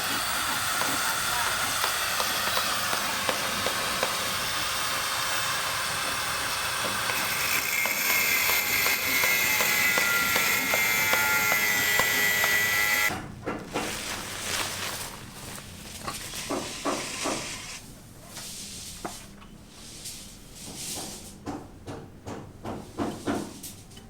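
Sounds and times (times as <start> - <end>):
power tool running: 0.0 - 17.8.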